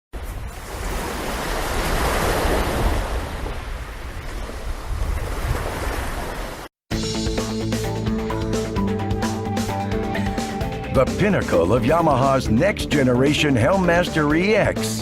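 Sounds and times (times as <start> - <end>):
wind buffeting microphone: 0.2 - 6.4.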